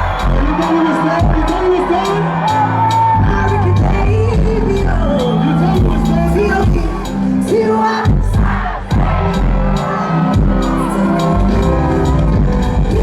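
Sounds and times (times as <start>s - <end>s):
crowd cheering: 0.0s - 7.4s, 8.3s - 13.0s
live afrobeats music: 0.0s - 13.0s
person singing: 3.1s - 13.0s.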